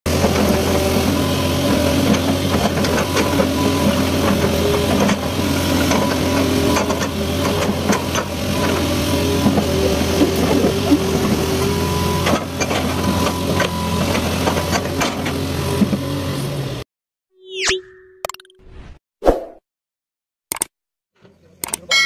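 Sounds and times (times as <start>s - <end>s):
diesel engine running: 0.1s - 16.8s.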